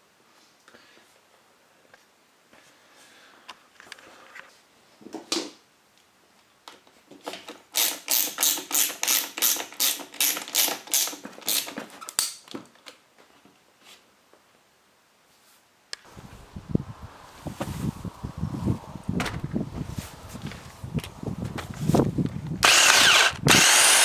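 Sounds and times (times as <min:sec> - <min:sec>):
ratchet clicking: 0:07.8 - 0:11.7, 0:22.6 - 0:24.0.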